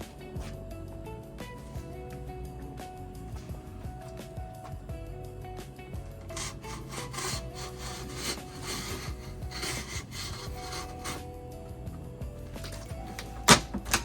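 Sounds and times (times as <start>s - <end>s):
quiet background music: 0.0s - 14.0s
packaging scraped and rubbed: 6.3s - 11.3s.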